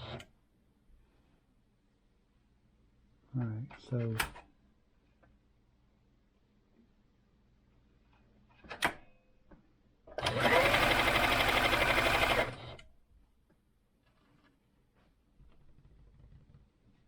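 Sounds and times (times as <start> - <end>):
sewing machine running: 10.2 - 12.8.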